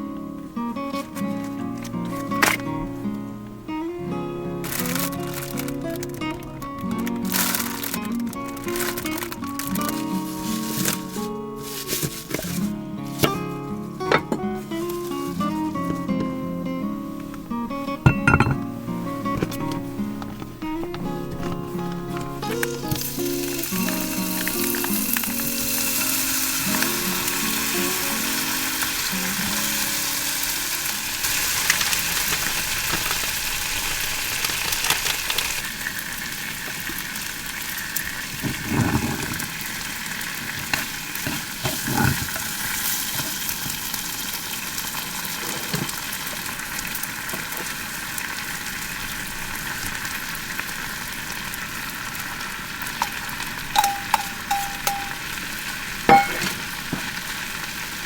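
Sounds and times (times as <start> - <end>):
food sizzling in a pan: 0.5 - 58.0
utensil knocking against pan: 18.1 - 18.7, 53.8 - 55.2, 56.1 - 57.1.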